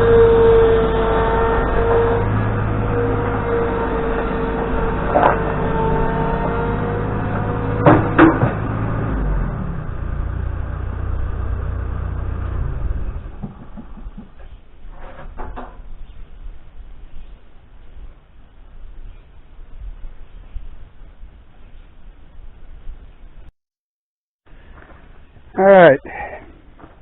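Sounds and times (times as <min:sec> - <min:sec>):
engine running with a whine: 0:00.0 - 0:14.4
sharp metal knocks: 0:07.3 - 0:08.8.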